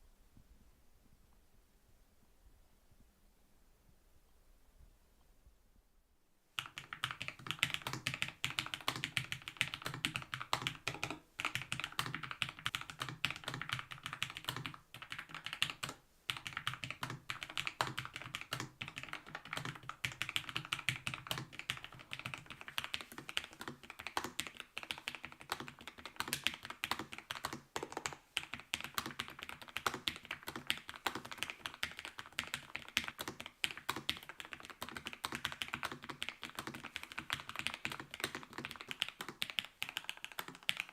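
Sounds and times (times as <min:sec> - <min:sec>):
mechanical keyboard typing: 0:06.6 - 0:40.9.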